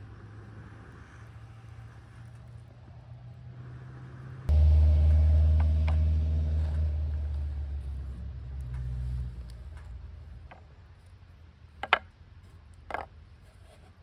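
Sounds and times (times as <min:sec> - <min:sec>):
faint low hum: 0:00.0 - 0:14.0
loud low mechanical rumble: 0:04.4 - 0:10.6.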